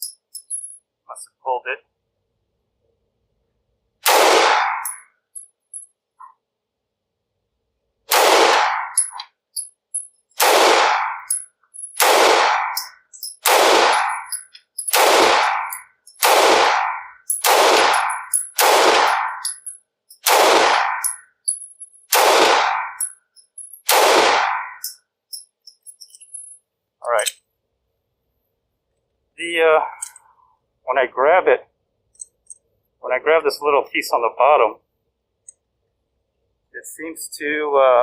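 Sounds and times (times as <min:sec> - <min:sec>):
pistol gunshots: 0:04.0 - 0:05.0, 0:08.1 - 0:09.2, 0:10.4 - 0:11.4, 0:12.0 - 0:19.6, 0:20.2 - 0:21.2, 0:22.1 - 0:23.1, 0:23.9 - 0:24.9.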